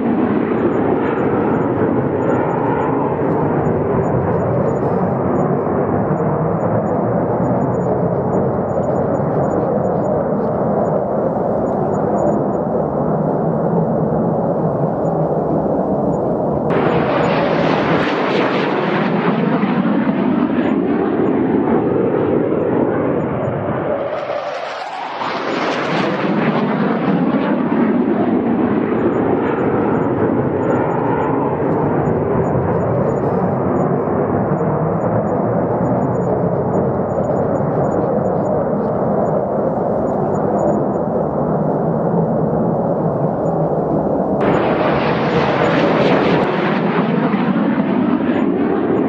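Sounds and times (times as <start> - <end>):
fighter jets roaring past: 0.0 - 49.0.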